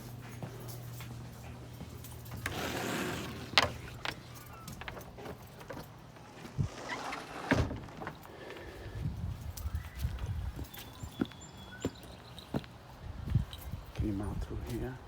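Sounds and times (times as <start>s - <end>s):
door sliding open: 2.4s - 4.0s, 6.3s - 8.2s.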